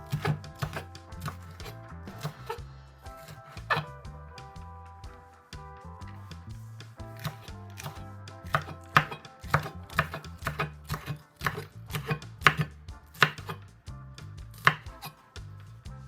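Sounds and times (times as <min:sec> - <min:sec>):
knife chopping on cutting board: 0:00.0 - 0:02.6, 0:03.2 - 0:03.9, 0:07.2 - 0:13.6, 0:14.6 - 0:15.2
soft background music: 0:00.0 - 0:16.0.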